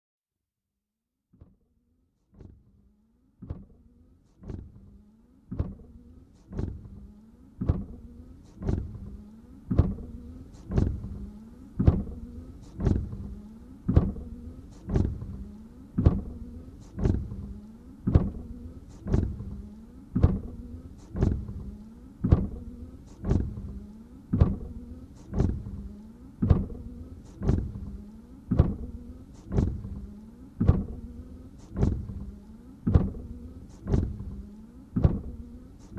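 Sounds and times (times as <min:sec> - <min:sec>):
windshield wipers on dry glass: 0:07.6 - 0:35.9.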